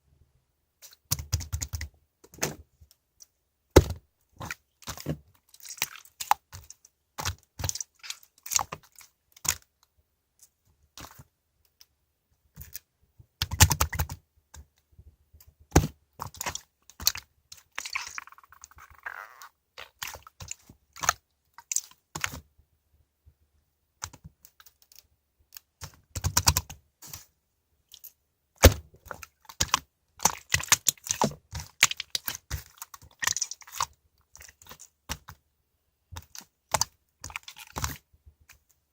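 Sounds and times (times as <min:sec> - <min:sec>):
slime squished by hand: 0:15.8 - 0:22.4, 0:27.9 - 0:35.3.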